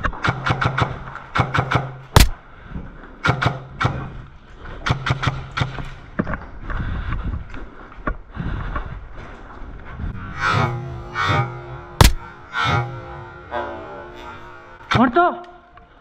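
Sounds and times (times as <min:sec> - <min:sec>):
airsoft guns firing in bursts: 0:00.2 - 0:02.4
low hum: 0:09.4 - 0:16.0.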